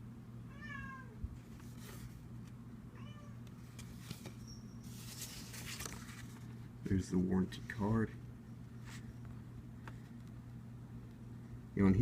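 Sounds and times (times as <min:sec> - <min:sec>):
steady low hum: 0:00.0 - 0:12.0
cat meowing: 0:00.5 - 0:01.2, 0:02.9 - 0:03.4
soft rustling: 0:03.6 - 0:06.6.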